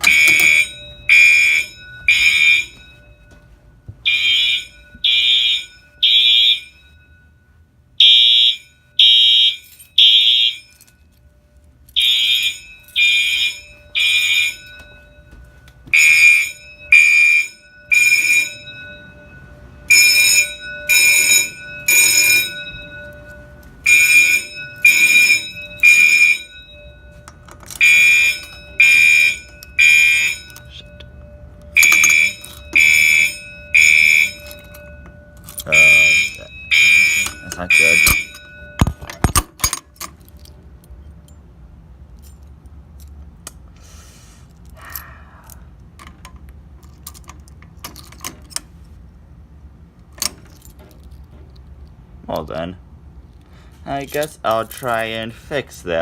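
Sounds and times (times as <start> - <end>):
fire alarm horns blasting: 0.0 - 39.6.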